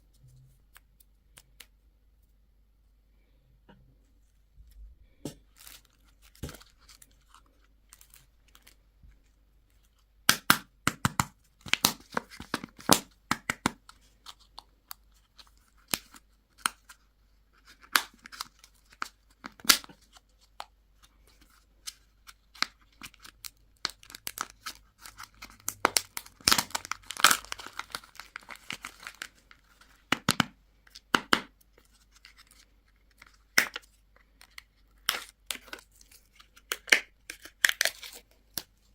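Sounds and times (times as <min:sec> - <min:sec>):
packaging crinkling: 0:21.3 - 0:30.0.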